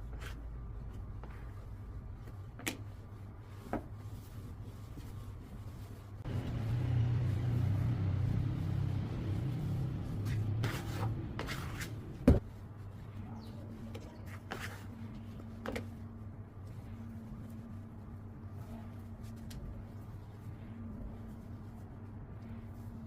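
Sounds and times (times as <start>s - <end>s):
low rumbling handling noise: 6.2s - 12.6s.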